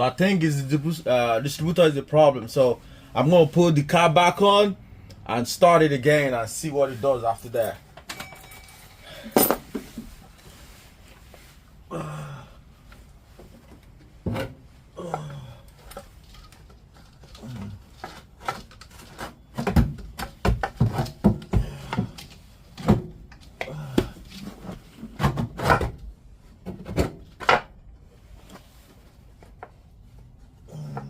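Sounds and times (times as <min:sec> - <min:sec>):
tools and parts knocking and clicking: 0:15.8 - 0:23.7.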